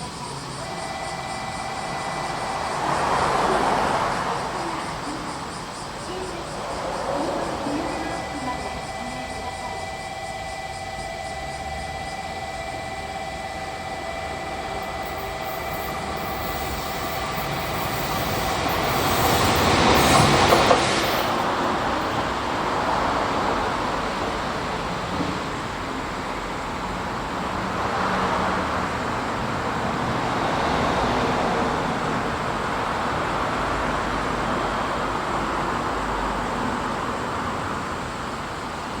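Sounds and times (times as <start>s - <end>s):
freight wagons clattering past: 0.0s - 27.5s
electric locomotive passing: 0.0s - 39.0s.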